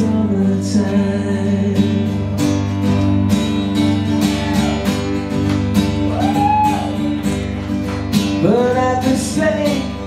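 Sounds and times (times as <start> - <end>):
man singing: 0.0 - 2.4, 8.4 - 10.0
strummed acoustic guitar: 0.0 - 10.0.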